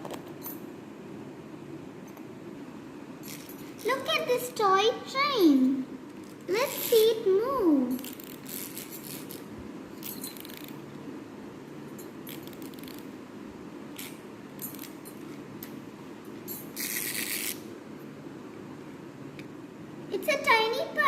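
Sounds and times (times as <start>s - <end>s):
toy train motor whirring: 6.6s - 7.2s, 16.8s - 17.6s.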